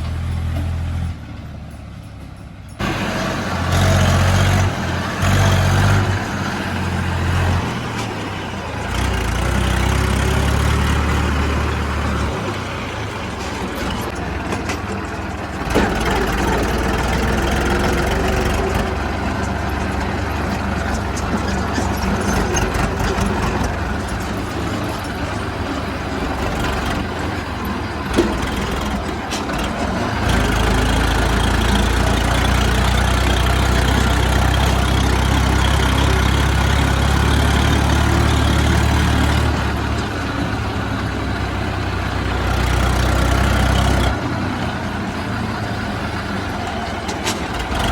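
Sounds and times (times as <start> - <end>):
diesel engine running: 0.0 - 47.9.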